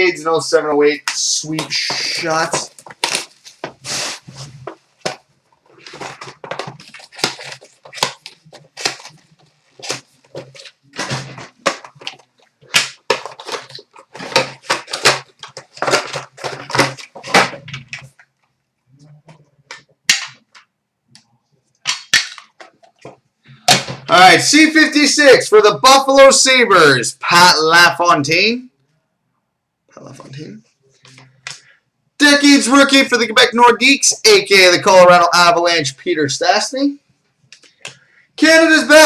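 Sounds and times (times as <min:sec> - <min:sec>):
card packs being ripped open: 0:01.8 - 0:04.3, 0:05.8 - 0:17.4.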